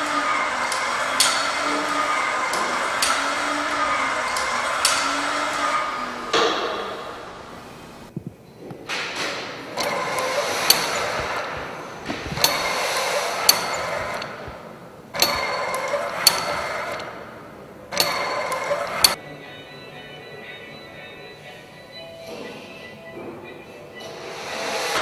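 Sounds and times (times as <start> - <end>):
clattering sculpture mechanism: 7.6 - 19.2
sharp mechanical clicks: 9.8 - 17.2, 17.9 - 19.2.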